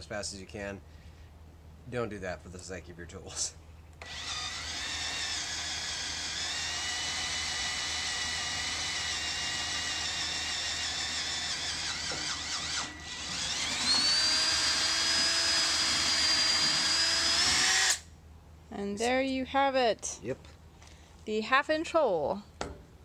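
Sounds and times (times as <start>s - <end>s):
cordless drill whining: 4.0s - 18.1s.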